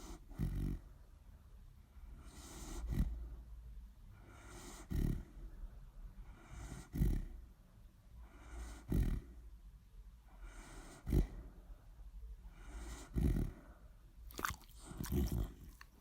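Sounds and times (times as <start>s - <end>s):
dog snoring: 0.0s - 0.9s, 2.2s - 3.4s, 4.2s - 5.4s, 6.2s - 7.4s, 8.2s - 9.4s, 10.4s - 11.6s, 12.5s - 16.0s.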